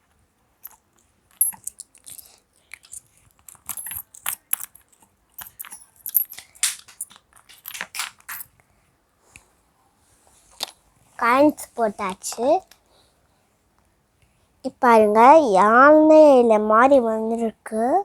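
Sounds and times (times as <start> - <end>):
coins clinking into coin bank: 1.4 - 8.5.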